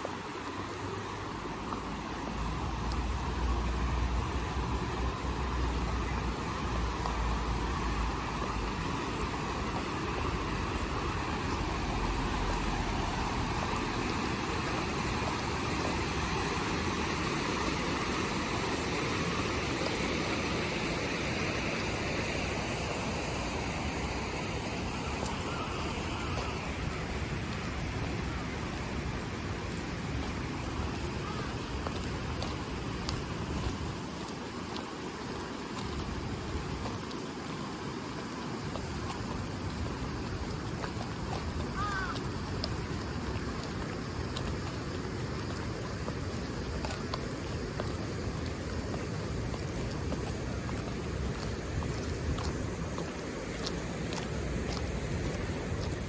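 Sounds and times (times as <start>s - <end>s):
river running water: 0.0s - 56.0s
road traffic: 0.6s - 32.9s.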